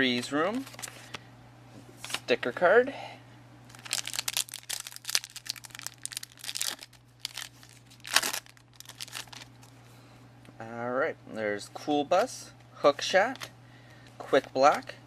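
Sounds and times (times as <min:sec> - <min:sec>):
wrapper crinkling: 0:03.7 - 0:09.7
wrapper ripping open: 0:03.7 - 0:09.7.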